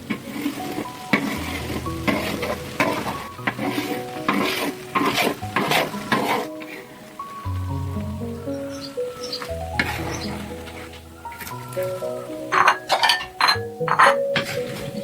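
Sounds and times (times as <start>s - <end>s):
food sizzling: 0.0s - 15.0s
spatula scraping wok: 0.1s - 6.8s.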